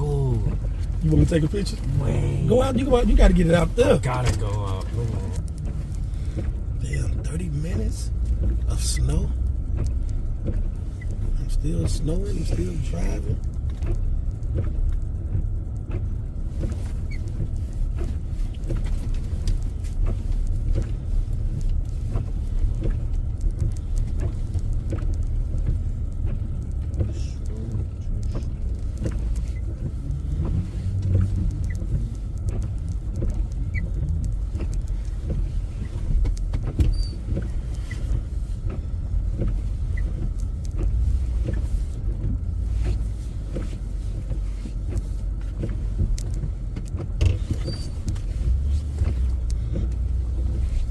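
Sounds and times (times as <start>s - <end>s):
engine and road rumble: 0.0s - 50.9s
small clicks and knocks: 8.1s - 50.9s.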